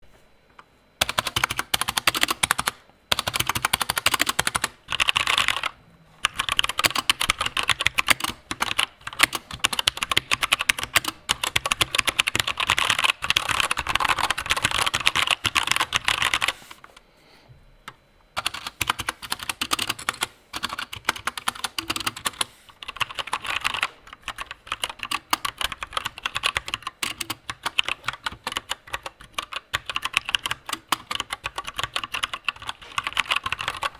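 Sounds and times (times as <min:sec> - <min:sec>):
mechanical keyboard typing: 0:01.0 - 0:16.6, 0:18.4 - 0:33.9.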